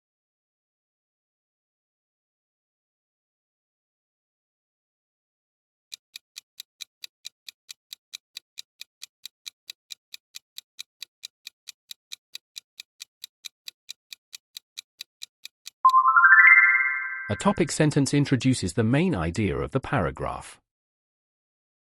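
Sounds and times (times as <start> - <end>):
clock-like ticking timer: 5.9 - 16.0.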